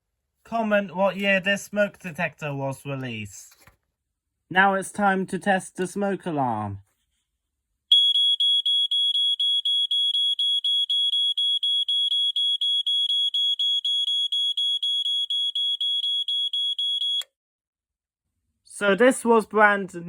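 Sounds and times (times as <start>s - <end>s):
smoke alarm beeping: 7.9s - 17.3s.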